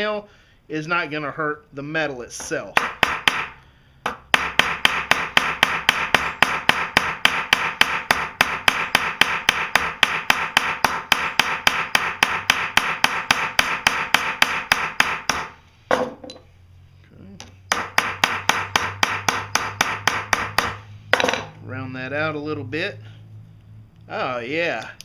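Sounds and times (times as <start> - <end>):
hammer tapping on nail: 2.8 - 15.5, 17.7 - 21.3.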